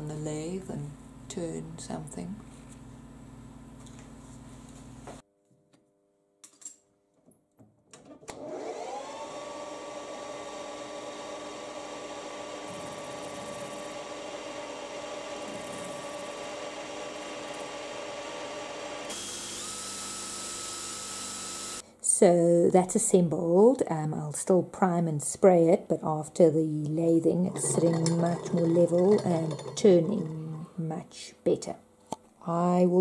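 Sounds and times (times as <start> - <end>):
lathe motor whining: 8.3 - 21.8, 27.3 - 30.8.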